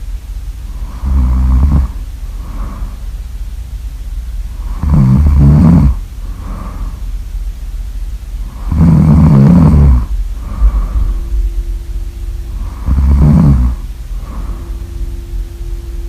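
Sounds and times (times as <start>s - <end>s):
loud rattling snores: 0.7s - 3.0s, 4.6s - 7.0s, 8.4s - 11.2s, 12.5s - 14.8s
soft breathing out: 1.8s - 3.2s, 5.9s - 7.2s, 9.4s - 11.8s, 12.5s - 15.2s.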